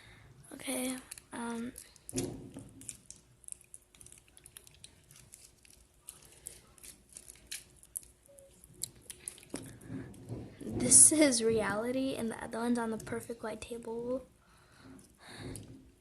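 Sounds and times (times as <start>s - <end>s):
clicks and crackles of slime: 0.6s - 10.8s.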